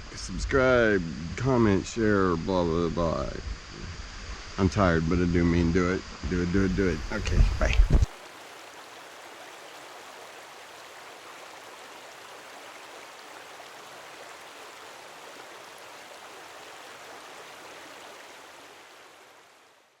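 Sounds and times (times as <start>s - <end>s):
stream water flowing: 6.4s - 20.0s.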